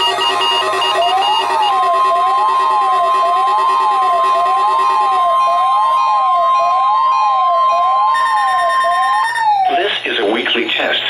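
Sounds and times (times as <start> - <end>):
siren-like sweeping tone: 0.0 - 10.0
steady loud alert tone: 0.0 - 10.4.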